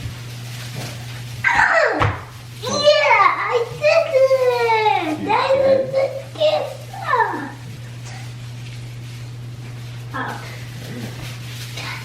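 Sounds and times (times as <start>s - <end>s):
steady low hum: 0.0s - 12.0s
young child's voice: 2.6s - 7.6s, 10.1s - 10.5s.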